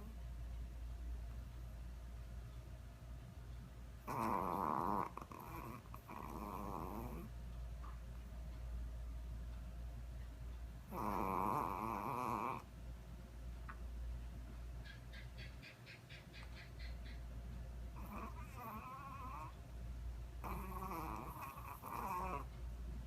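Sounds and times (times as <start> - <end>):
pet snoring: 4.0 - 7.4, 10.9 - 12.7, 18.0 - 19.5, 20.4 - 22.5.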